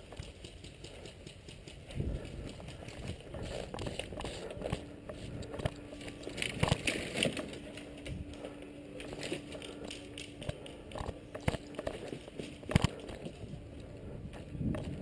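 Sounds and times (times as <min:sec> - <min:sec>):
faint steady hum: 0:00.0 - 0:15.0
footsteps crunching: 0:01.8 - 0:13.7.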